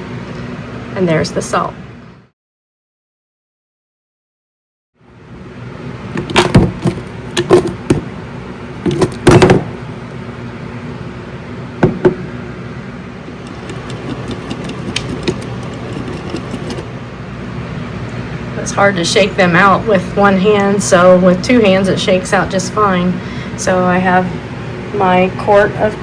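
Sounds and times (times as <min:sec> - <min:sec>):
steady background hum: 0:00.0 - 0:02.3, 0:05.0 - 0:26.0
salt container shaking rattles: 0:13.3 - 0:16.9.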